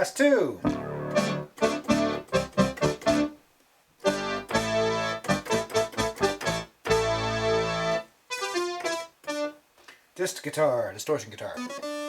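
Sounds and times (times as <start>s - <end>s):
synth brass chord stabs: 0.6s - 3.3s, 4.1s - 8.0s.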